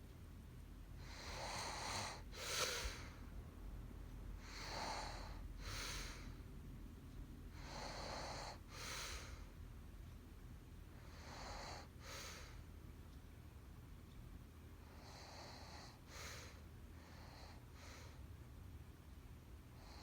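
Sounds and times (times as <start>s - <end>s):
woman snoring: 1.1s - 3.1s, 4.5s - 6.2s, 7.6s - 9.2s.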